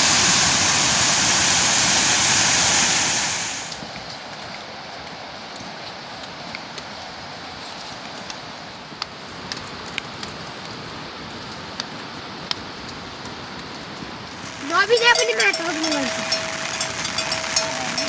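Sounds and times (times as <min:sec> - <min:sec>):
raindrops tapping close by: 0:00.0 - 0:03.9, 0:11.8 - 0:18.0
steady rainfall hissing: 0:00.0 - 0:04.0, 0:13.8 - 0:18.0.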